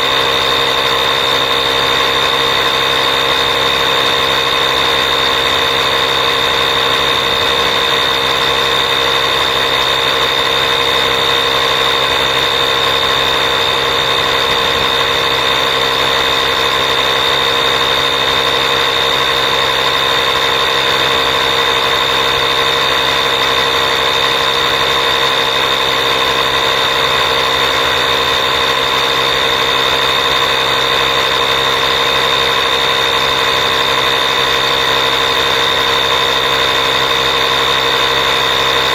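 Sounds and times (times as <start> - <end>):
air compressor motor whine: 0.0 - 38.9.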